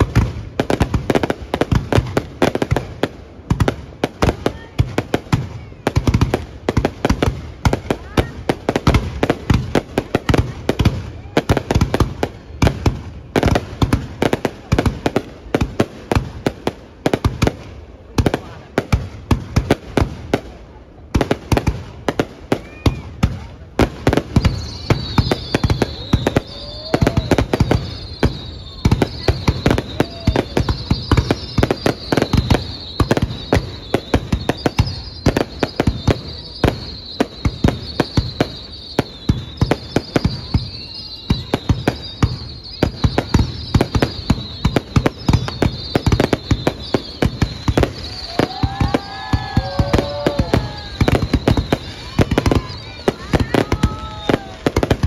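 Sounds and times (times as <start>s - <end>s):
fireworks bangs and pops: 0.0s - 55.0s
wavering high-pitched whistle: 24.2s - 55.0s.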